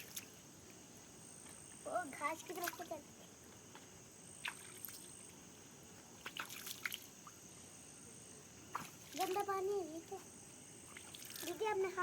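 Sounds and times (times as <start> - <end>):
small water splashes and drips: 0.0 - 0.4, 2.2 - 3.4, 4.4 - 5.4, 6.2 - 7.4, 8.7 - 9.7, 10.8 - 11.8
steady low hiss: 0.0 - 12.0.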